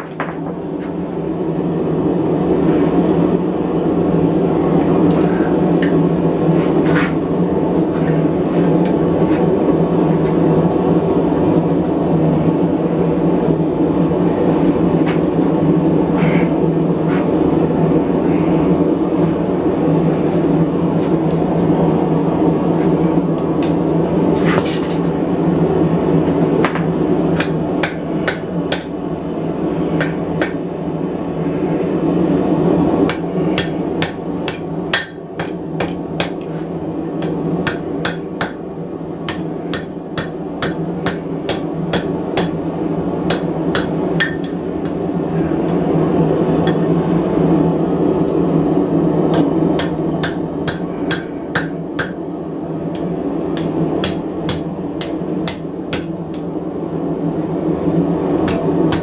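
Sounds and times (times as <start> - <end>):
steady low roar: 0.5 - 59.0
hammer striking steel on anvil: 5.8 - 6.3, 27.4 - 29.1, 30.0 - 30.8, 33.1 - 45.1, 46.6 - 47.4, 49.3 - 56.6, 58.4 - 59.0.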